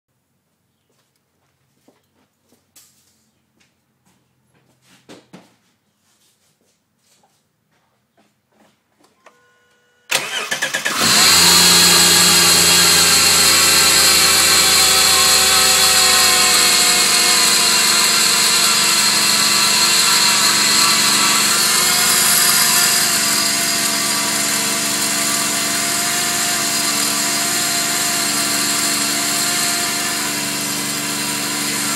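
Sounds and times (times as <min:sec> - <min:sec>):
car engine cranking and idling: 0:10.1 - 0:31.9
high pulley whine: 0:10.1 - 0:31.9.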